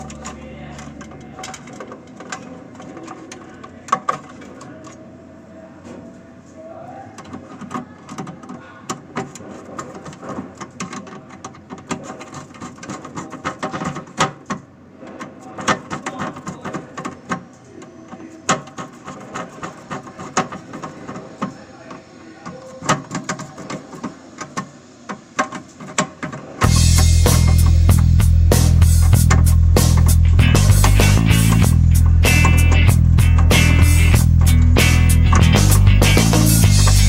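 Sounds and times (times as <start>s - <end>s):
sharp clicks and light knocks: 0.0s - 5.0s, 7.2s - 26.7s.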